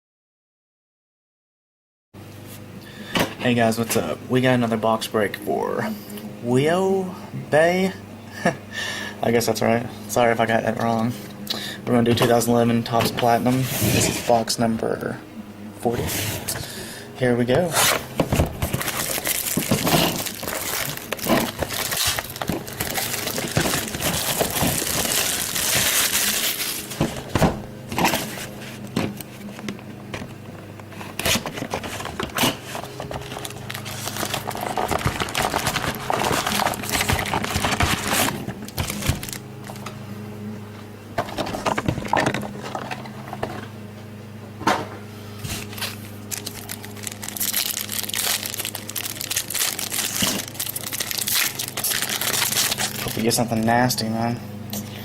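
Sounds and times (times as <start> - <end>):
steady low hum: 2.2 - 55.0
card pack wrappers crinkling: 17.8 - 29.2, 31.1 - 39.9, 45.5 - 53.6
cards clicking and rustling: 17.8 - 30.3, 30.9 - 40.0.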